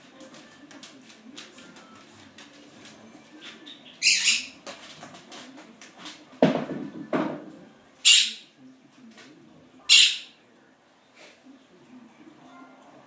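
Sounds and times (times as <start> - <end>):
parrot squawking: 3.7 - 4.6, 8.0 - 8.5, 9.9 - 10.4.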